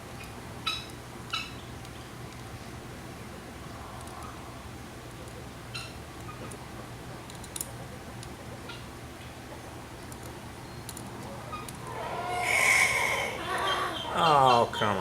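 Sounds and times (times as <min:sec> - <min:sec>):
steady low hum: 0:00.0 - 0:15.0
poultry calling loudly: 0:11.9 - 0:15.0.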